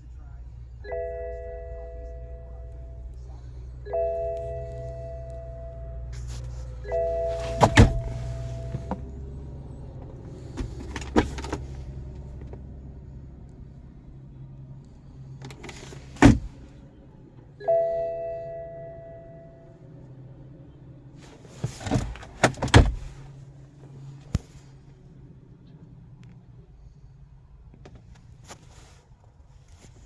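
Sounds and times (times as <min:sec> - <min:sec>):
knocks and clicks of handling: 0:07.3 - 0:09.1, 0:10.0 - 0:11.6, 0:21.6 - 0:23.1.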